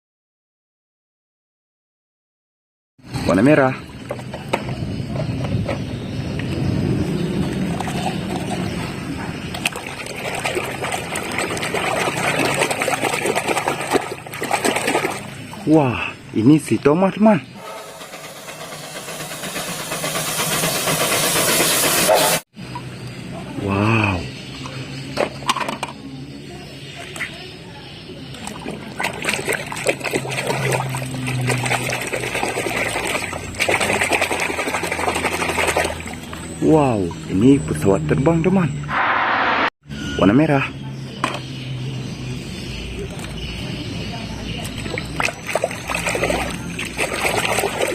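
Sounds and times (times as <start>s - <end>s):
water splashing and trickling: 6.8s - 16.0s, 28.1s - 37.4s, 42.8s - 47.9s
scrubbing toy car: 9.5s - 15.4s, 28.4s - 36.2s, 44.6s - 47.9s.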